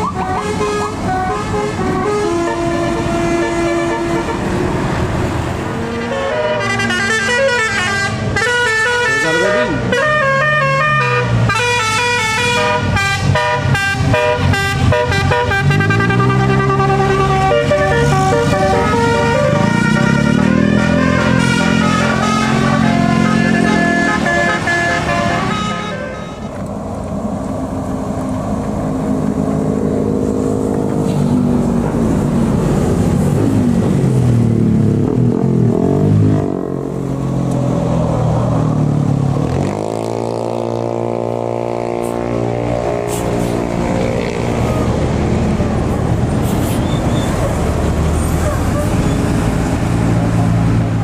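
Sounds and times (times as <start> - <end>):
heavy engine revving: 0.0 - 26.0
bus musical horn: 0.0 - 26.6
road traffic passing: 0.0 - 51.0.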